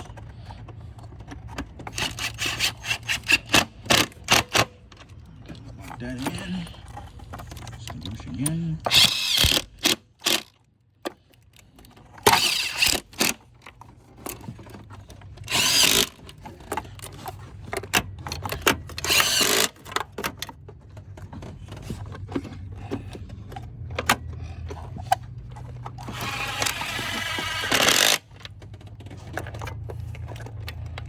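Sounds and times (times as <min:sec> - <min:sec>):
clicks and small clatter: 0:00.0 - 0:31.0
power drill spinning: 0:01.9 - 0:04.6, 0:08.8 - 0:10.4, 0:12.3 - 0:13.4, 0:15.4 - 0:16.2, 0:19.0 - 0:19.8, 0:26.0 - 0:28.3.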